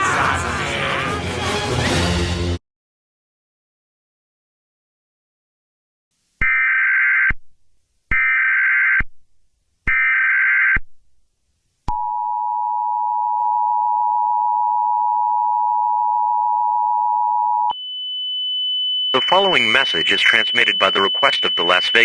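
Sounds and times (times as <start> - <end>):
two-tone attention signal: 19.2 - 22.0.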